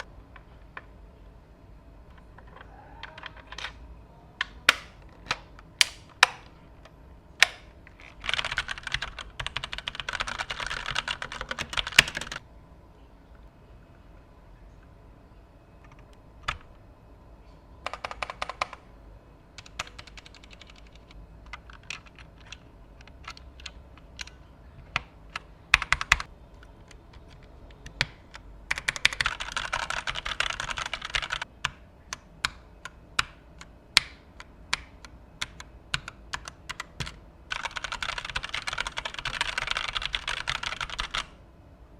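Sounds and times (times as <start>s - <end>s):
mechanical keyboard typing: 7.4s - 12.4s, 17.8s - 18.9s, 19.6s - 41.4s.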